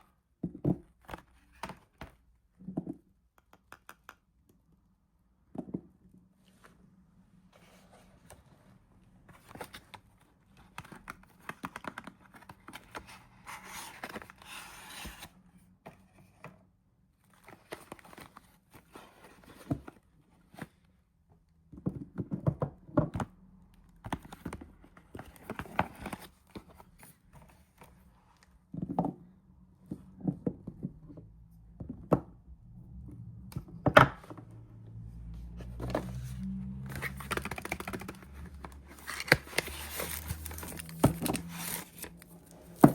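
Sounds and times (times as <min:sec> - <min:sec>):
wrapper tearing and crinkling: 0:37.0 - 0:42.9.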